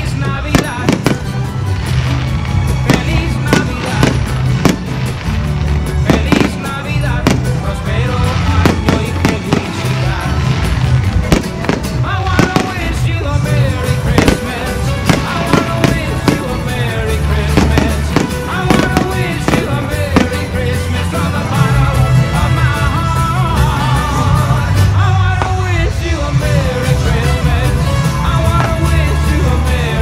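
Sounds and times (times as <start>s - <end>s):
fireworks bangs: 0.0s - 23.0s
loud music with bass line: 0.0s - 30.0s.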